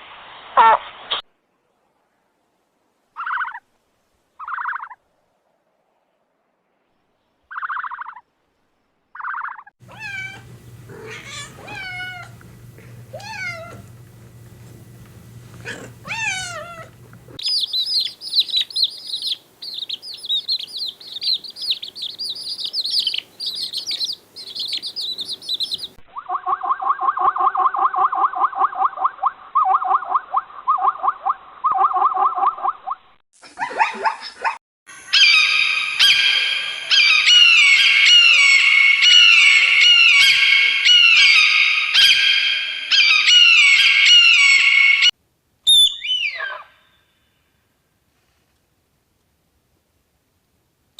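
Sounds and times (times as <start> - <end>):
animal calls: 9.2 - 14.0, 15.5 - 32.9, 35.1 - 45.1
low hum: 9.8 - 17.4
fast high chirping: 15.6 - 26.0.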